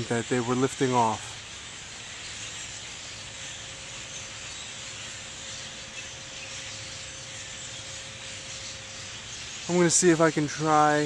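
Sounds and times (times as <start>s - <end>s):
flock of birds chattering: 0.0s - 11.0s
low background hum: 0.0s - 11.0s.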